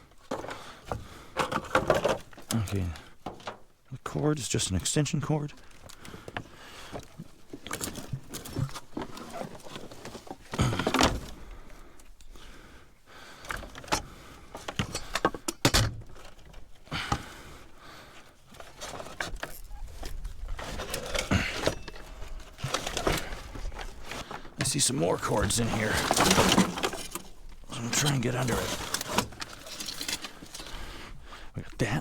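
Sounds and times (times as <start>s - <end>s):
junk rattling in dumpster: 20.5s - 30.6s.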